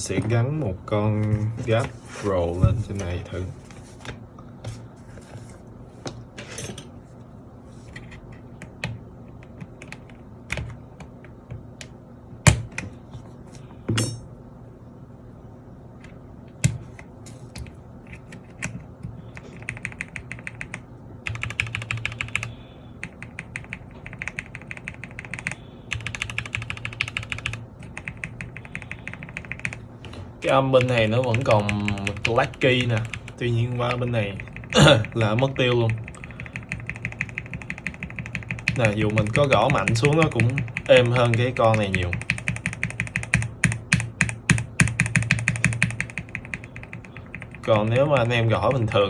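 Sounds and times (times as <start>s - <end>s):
mechanical keyboard typing: 19.4s - 29.8s, 30.8s - 48.3s.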